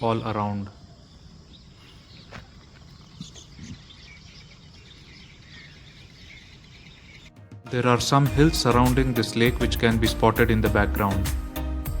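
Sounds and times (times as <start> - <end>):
faint bird chirps: 0.0 - 7.4.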